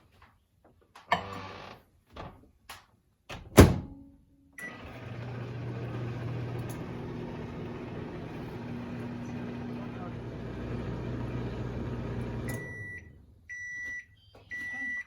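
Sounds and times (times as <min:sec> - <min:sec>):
microwave humming with fan: 0:01.1 - 0:01.8, 0:04.6 - 0:13.3.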